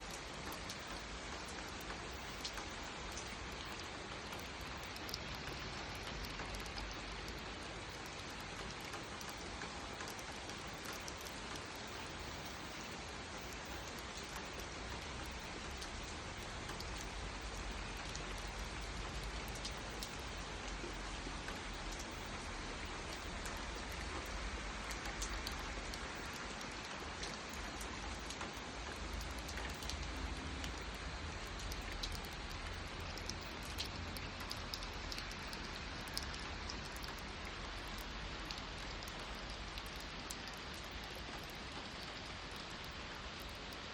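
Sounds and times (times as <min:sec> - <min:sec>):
raindrop ticks: 0:00.0 - 0:43.9
steady rain hiss: 0:00.0 - 0:43.9.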